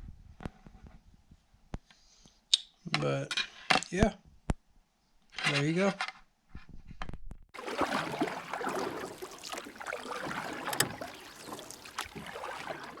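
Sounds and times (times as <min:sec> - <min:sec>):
river water rushing: 0:07.6 - 0:13.0.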